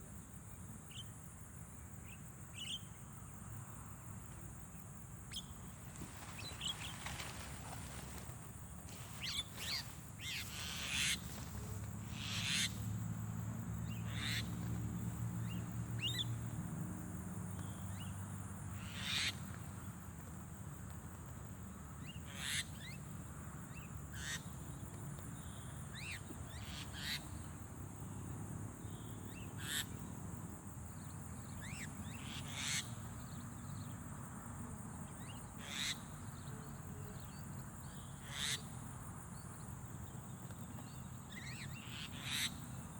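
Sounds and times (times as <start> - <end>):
short sharp bird calls: 9.0 - 12.8.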